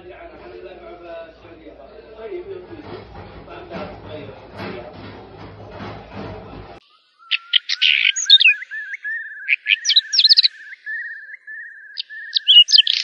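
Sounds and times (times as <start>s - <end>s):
bird chirping: 6.8s - 13.0s
bird trilling: 6.9s - 13.0s.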